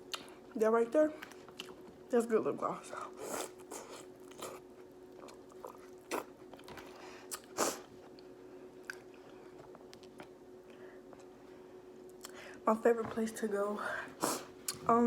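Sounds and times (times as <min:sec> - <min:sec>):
close chewing and biting: 0:01.4 - 0:01.8.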